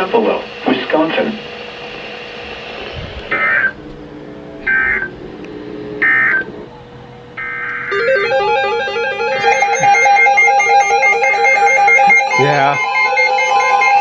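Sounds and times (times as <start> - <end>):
steady tone: 0.0 - 14.0
warbling digital data tones: 0.0 - 14.0
music: 7.5 - 14.0.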